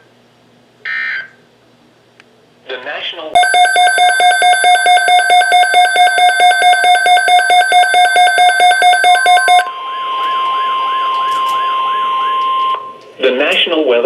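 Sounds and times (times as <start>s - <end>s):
pulsing electronic alarm beep: 3.4s - 9.7s
steady warning alarm tone: 3.4s - 13.0s.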